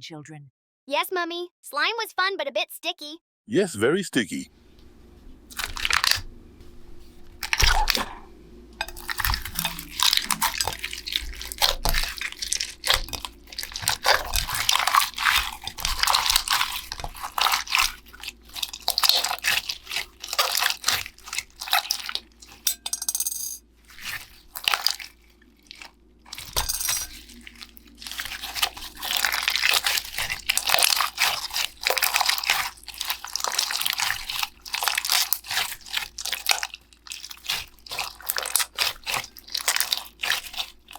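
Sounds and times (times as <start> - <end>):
hands handling toys and slime: 9.1 - 22.6, 23.9 - 40.9.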